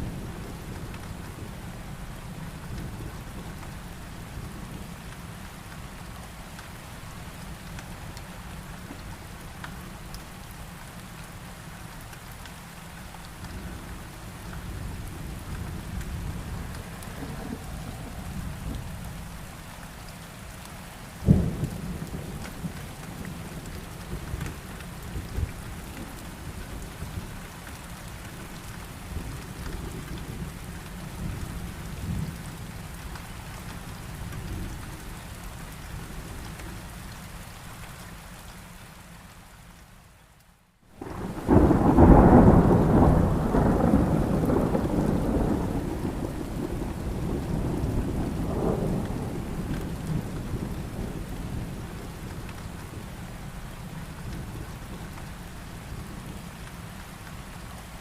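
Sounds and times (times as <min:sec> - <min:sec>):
heavy rain: 0:00.0 - 0:58.0
low rolling thunder: 0:14.7 - 0:19.6, 0:21.2 - 0:27.3, 0:41.0 - 0:55.2
loud thunderclap: 0:41.0 - 0:51.3.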